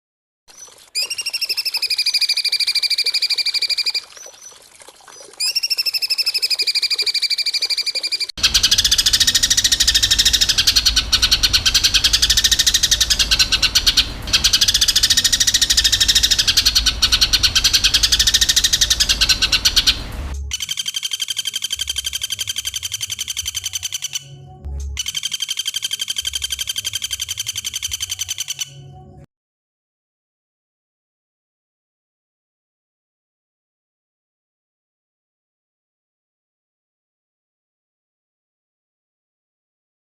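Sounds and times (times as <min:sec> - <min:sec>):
low hum: 0:08.4 - 0:20.6.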